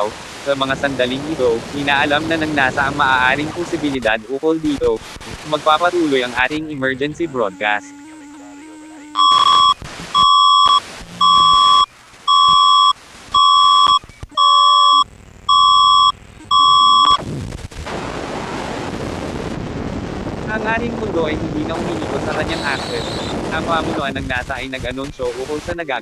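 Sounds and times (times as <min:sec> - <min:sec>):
steady rushing static noise: 0:00.0 - 0:26.0
harsh buzzer beeps: 0:09.1 - 0:17.2, 0:22.5 - 0:23.3.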